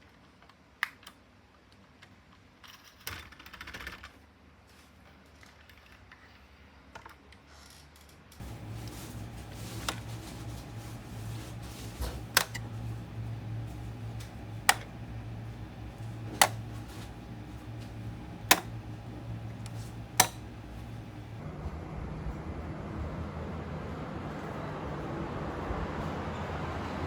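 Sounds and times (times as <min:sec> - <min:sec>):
sharp clicks: 0:08.4 - 0:21.4
steady low hum: 0:08.4 - 0:24.2.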